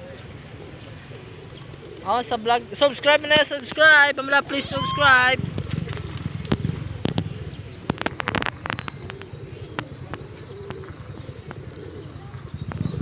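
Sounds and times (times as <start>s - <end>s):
bird wings flapping: 4.4s - 13.0s
faint low bird calls: 4.4s - 13.0s.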